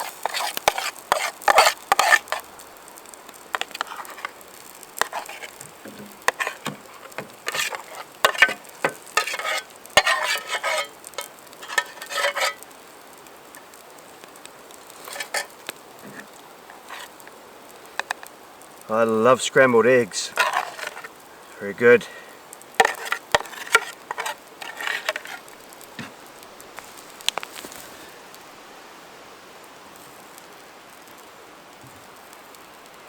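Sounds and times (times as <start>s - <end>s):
utensil scraping metal tin: 0.0s - 2.4s, 3.5s - 4.4s, 5.0s - 12.6s, 14.9s - 17.3s, 18.9s - 22.1s, 22.8s - 26.1s
beans sizzling and bubbling: 0.0s - 33.0s.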